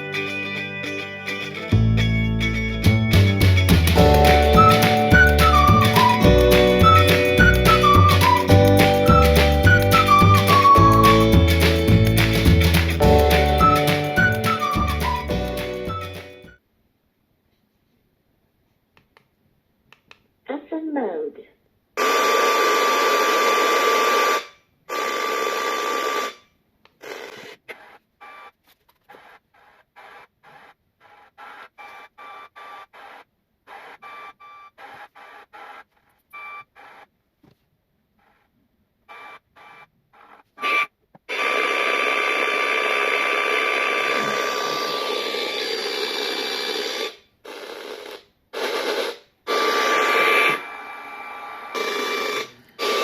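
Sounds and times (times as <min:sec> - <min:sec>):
faint steady whistle: 0:04.2 - 0:12.2, 0:13.0 - 0:16.6.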